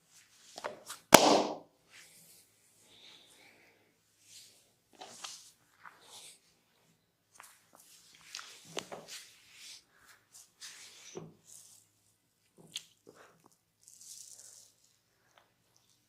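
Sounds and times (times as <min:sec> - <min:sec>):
short sharp sounds: 0:01.2 - 0:01.6.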